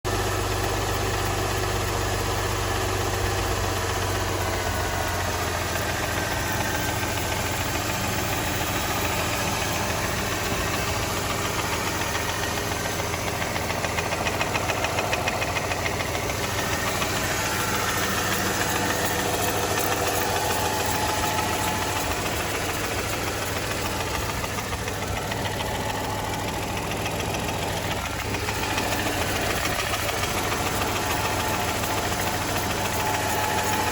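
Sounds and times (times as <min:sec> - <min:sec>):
engine running with rapid knock: 0:00.1 - 0:33.9.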